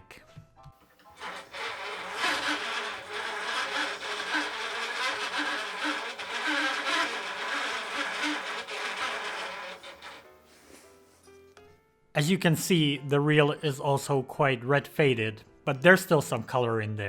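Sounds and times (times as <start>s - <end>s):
film viewer buzzing rattle: 1.2s - 10.2s.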